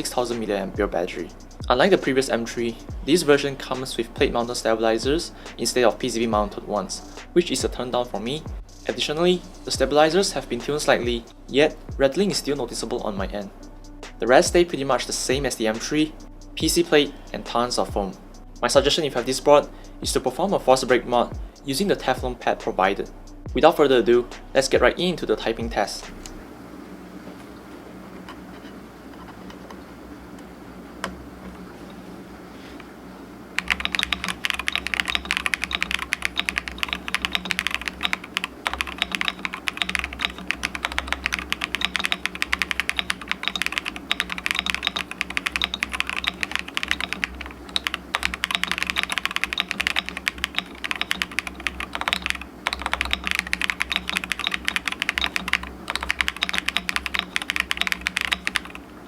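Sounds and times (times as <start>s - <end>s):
faint hum: 0.0s - 59.0s
fast typing on mechanical keyboard: 33.6s - 58.9s.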